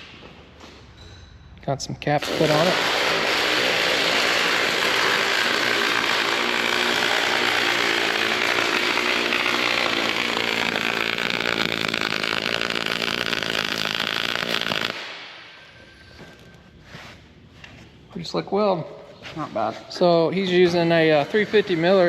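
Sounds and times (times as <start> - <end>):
welder arc buzzing: 2.2 - 16.6.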